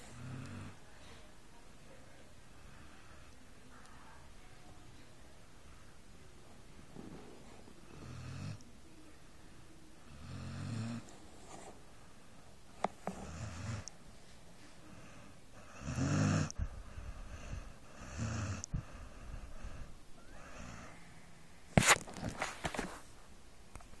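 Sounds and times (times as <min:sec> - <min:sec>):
dog snoring: 0:00.0 - 0:00.8, 0:07.0 - 0:08.6, 0:10.1 - 0:11.2, 0:13.1 - 0:13.9, 0:14.9 - 0:21.0.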